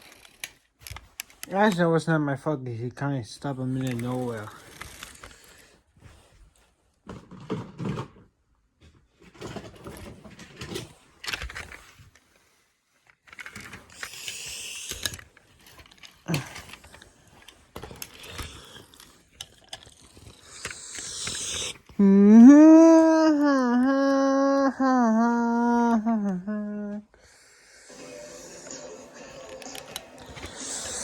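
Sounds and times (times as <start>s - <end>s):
toy cars clicking and rattling: 0.0s - 1.8s, 13.2s - 21.9s, 29.4s - 31.0s.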